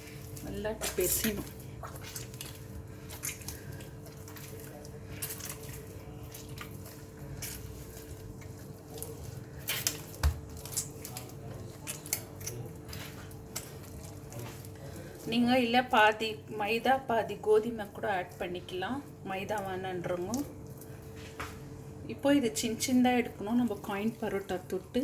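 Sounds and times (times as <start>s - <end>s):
dough squishing: 0.0s - 25.0s.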